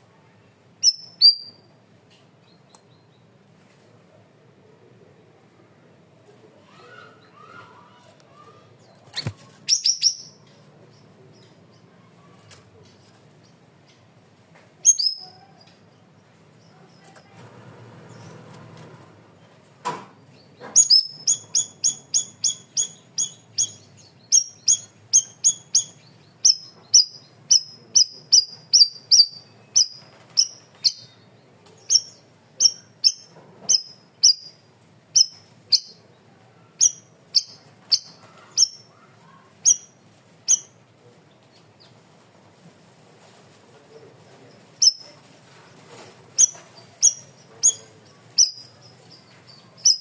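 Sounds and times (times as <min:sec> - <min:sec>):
songbird high sharp chirps: 0:00.8 - 0:01.7, 0:09.2 - 0:10.6, 0:14.8 - 0:15.4, 0:20.8 - 0:34.6, 0:35.2 - 0:36.0, 0:36.8 - 0:38.9, 0:39.6 - 0:40.8, 0:44.8 - 0:45.2, 0:46.4 - 0:50.0.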